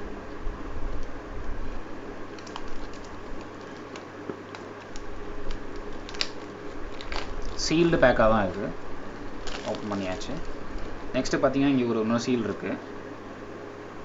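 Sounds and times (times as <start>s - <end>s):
steady low hum: 0.0s - 14.0s.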